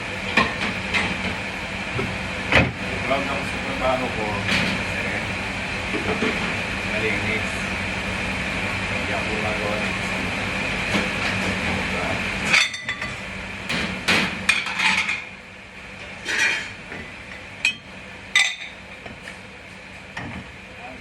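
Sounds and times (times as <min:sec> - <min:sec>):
kitchen equipment hum: 0:00.0 - 0:21.0
dishes and pots clattering: 0:14.1 - 0:15.3, 0:16.2 - 0:16.8, 0:18.4 - 0:18.8.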